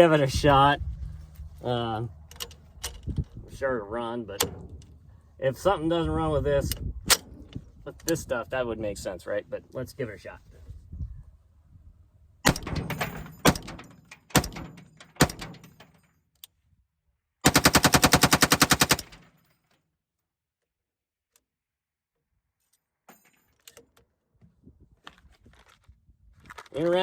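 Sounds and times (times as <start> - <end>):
rifle single shots: 12.4 - 13.8
rapid automatic gunfire burst: 17.4 - 19.2.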